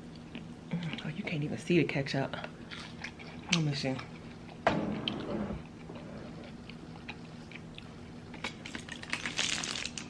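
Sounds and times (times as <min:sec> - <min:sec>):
chewing clicks and crunches: 0:05.7 - 0:10.0.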